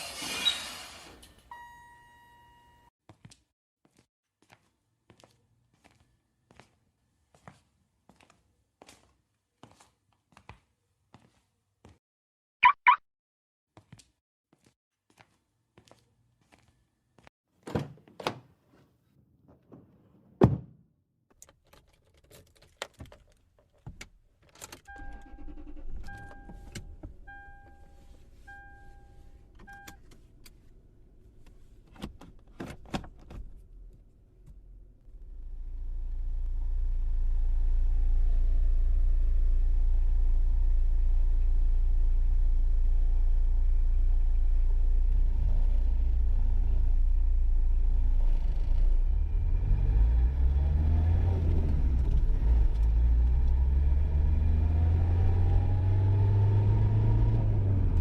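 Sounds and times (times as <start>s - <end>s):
car warning chime beeping: 1.5s - 2.9s, 24.9s - 30.0s.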